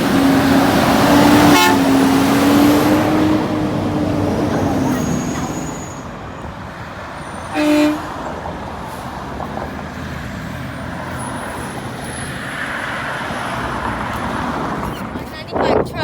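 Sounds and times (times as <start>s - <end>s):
vehicle road noise: 0.0s - 16.0s
horn toot: 0.1s - 6.0s, 7.5s - 8.2s.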